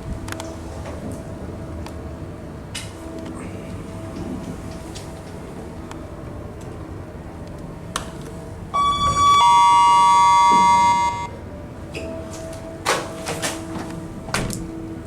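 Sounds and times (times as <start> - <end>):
two-tone lift chime: 8.8 - 11.4.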